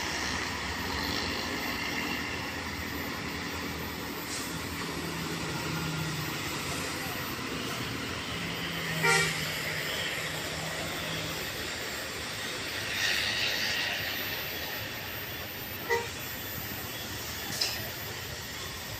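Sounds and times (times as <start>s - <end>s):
road noise: 0.0s - 18.9s
rushing noise: 0.0s - 18.9s
vehicle horn toots: 9.0s - 9.5s, 15.8s - 16.2s.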